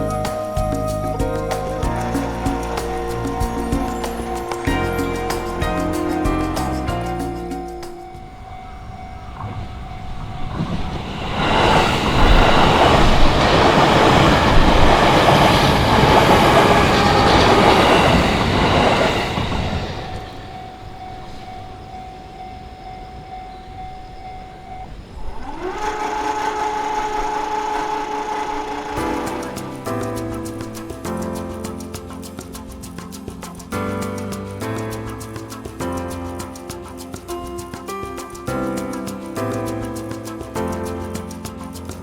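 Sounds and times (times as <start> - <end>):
level crossing warning bell: 0.0 - 30.9
train wheel and motor noise: 0.0 - 33.7.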